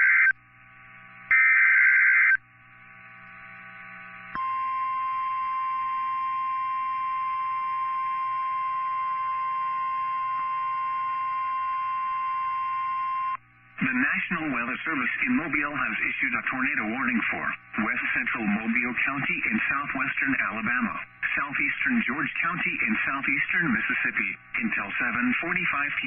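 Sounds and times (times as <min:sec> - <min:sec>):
steady alarm tone: 0:00.0 - 0:00.4, 0:01.3 - 0:02.4, 0:04.4 - 0:13.4.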